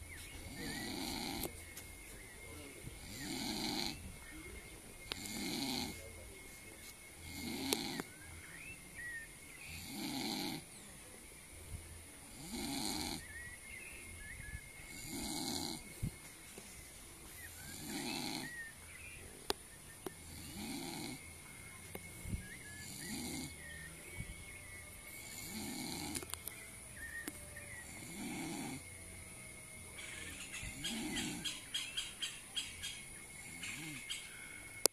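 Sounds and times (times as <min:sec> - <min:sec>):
person snoring: 0:00.5 - 0:01.5, 0:03.0 - 0:04.0, 0:05.1 - 0:06.0, 0:07.2 - 0:08.1, 0:09.7 - 0:10.7, 0:12.3 - 0:13.2, 0:14.9 - 0:15.9, 0:17.6 - 0:18.6, 0:20.2 - 0:21.2, 0:22.8 - 0:23.6, 0:25.1 - 0:26.2, 0:27.8 - 0:28.8, 0:30.7 - 0:31.4.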